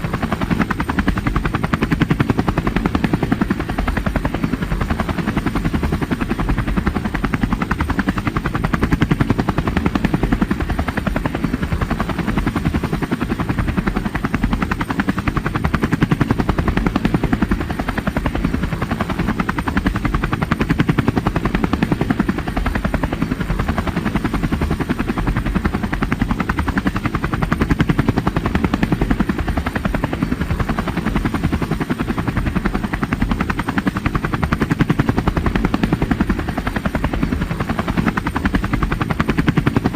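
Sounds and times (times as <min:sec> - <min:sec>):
helicopter engine noise: 0:00.0 - 0:39.9
helicopter rotor chop: 0:00.0 - 0:39.9.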